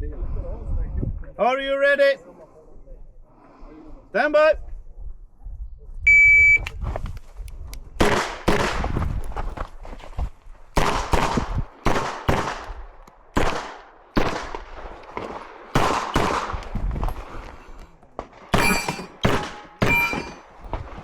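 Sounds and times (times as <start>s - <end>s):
pistol shots: 8.0s - 8.9s, 10.8s - 17.3s, 18.3s - 20.5s
metallic ringing of targets: 18.5s - 20.6s.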